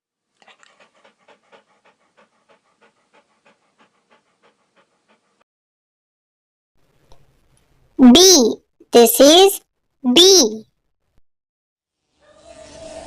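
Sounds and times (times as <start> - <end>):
dog panting: 0.4 - 5.4.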